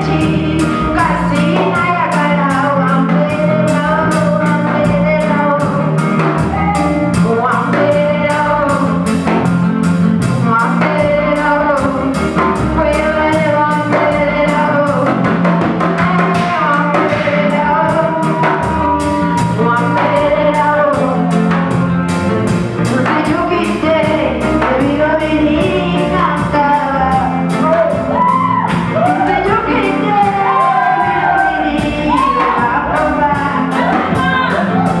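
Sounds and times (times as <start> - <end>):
people singing: 0.0 - 9.4, 10.7 - 22.1, 22.9 - 35.0
worship band playing: 0.0 - 35.0.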